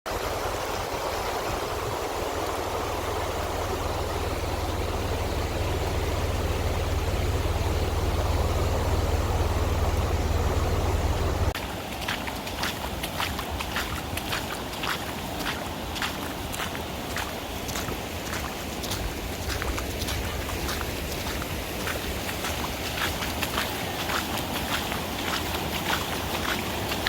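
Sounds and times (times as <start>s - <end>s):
floodwater rushing: 0.1s - 27.0s
deep low rumble: 2.8s - 11.6s.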